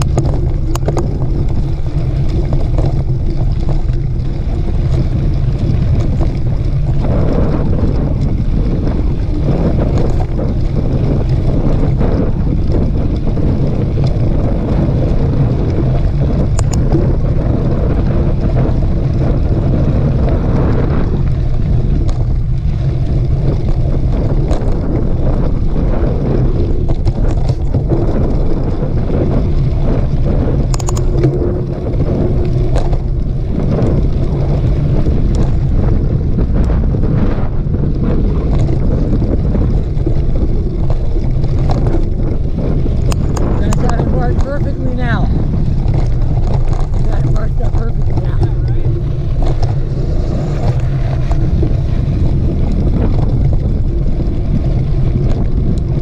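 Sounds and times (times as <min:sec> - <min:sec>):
bike clicks and rattles: 0:00.0 - 0:44.6, 0:45.3 - 0:56.0
bike rolling on dirt trail: 0:00.0 - 0:56.0
wind buffeting microphone: 0:00.0 - 0:56.0.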